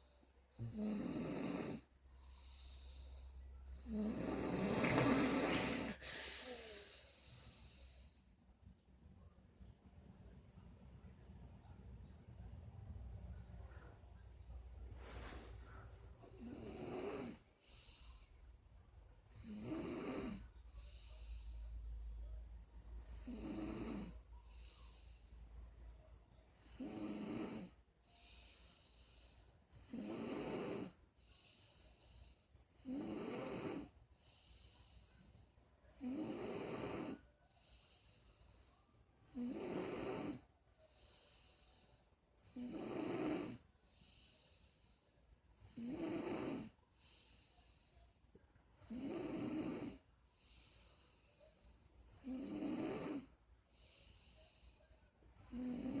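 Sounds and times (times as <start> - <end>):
quiet breathing: 0.0 - 56.0
person snoring: 0.5 - 3.1, 3.8 - 8.2, 16.2 - 18.3, 19.3 - 21.4, 23.0 - 25.2, 26.6 - 35.2, 35.9 - 38.7, 39.3 - 41.8, 42.4 - 44.9, 45.6 - 48.0, 48.8 - 56.0.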